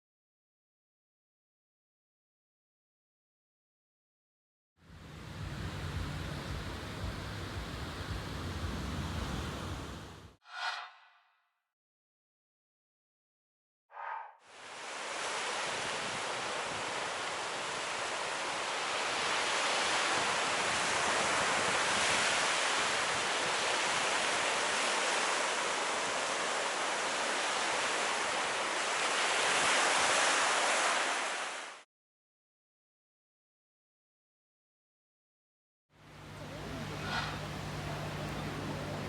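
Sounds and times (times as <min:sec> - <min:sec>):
ocean surf washing onto beach: 0:04.9 - 0:10.3, 0:14.5 - 0:31.8, 0:36.1 - 0:39.0.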